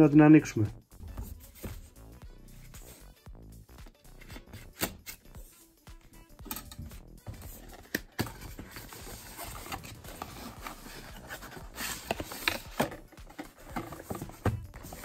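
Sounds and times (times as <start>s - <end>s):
cardboard box scraping and rustling: 7.4s - 15.0s.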